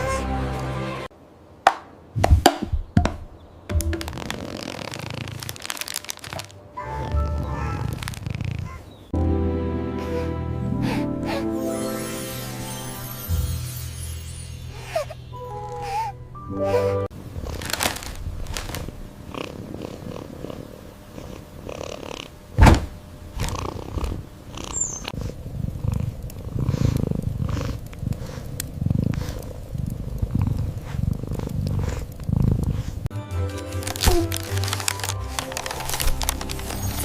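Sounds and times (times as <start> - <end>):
cat purring: 6.8 - 9.0, 18.3 - 22.4, 23.4 - 33.1.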